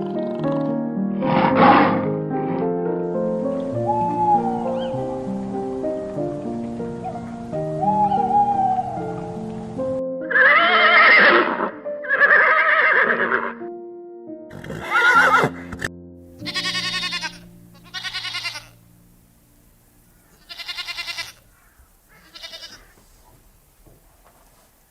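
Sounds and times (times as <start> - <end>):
background music: 0.0 - 21.2
farm animal calls: 0.1 - 2.1, 10.2 - 13.6, 16.4 - 18.8, 20.1 - 23.0.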